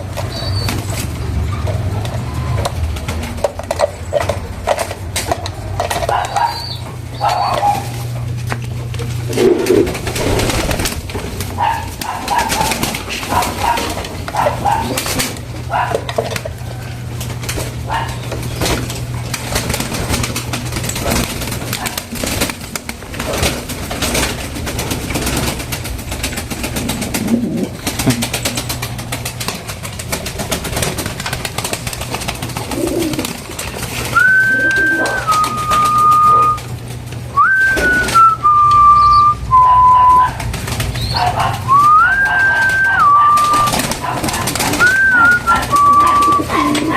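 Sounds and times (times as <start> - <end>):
pigeons cooing: 0.0 - 22.5, 23.1 - 46.9
steady low hum: 0.0 - 42.0
two-note whistles: 34.2 - 36.7, 37.4 - 40.4, 44.8 - 46.4.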